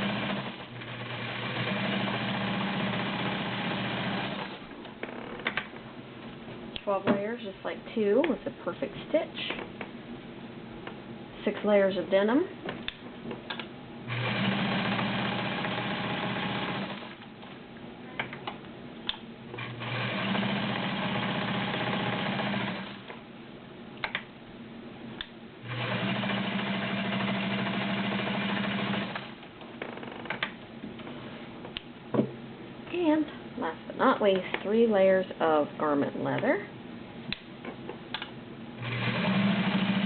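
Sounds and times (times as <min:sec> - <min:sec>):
sewing machine stitching: 0:00.0 - 0:04.6, 0:14.1 - 0:17.2, 0:19.6 - 0:23.1, 0:25.6 - 0:29.4, 0:38.8 - 0:40.0.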